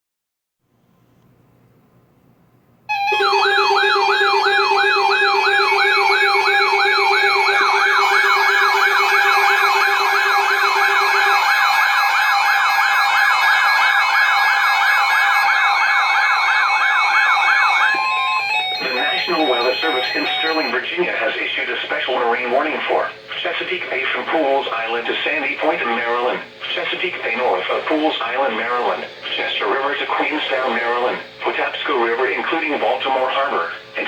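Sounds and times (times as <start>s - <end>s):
siren-style alert tone wailing: 2.9s - 20.8s.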